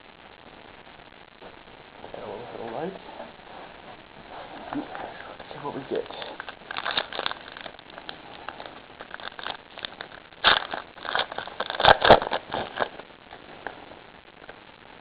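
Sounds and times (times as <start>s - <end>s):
wrapper crinkling and tearing: 4.4s - 13.8s.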